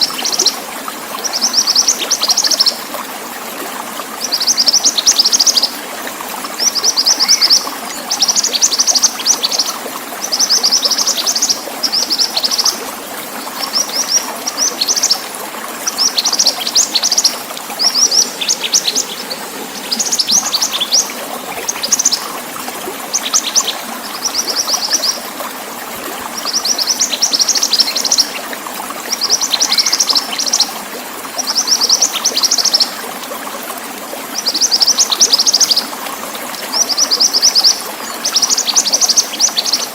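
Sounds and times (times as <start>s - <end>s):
running water: 0.0s - 39.9s
songbird trilling: 6.7s - 7.6s, 15.9s - 22.3s, 29.2s - 30.7s.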